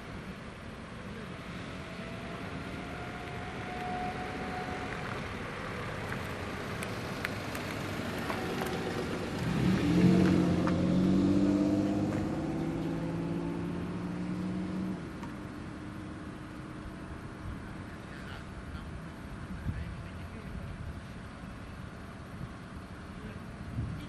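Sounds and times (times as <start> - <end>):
railcar engine accelerating: 1.2 - 10.5.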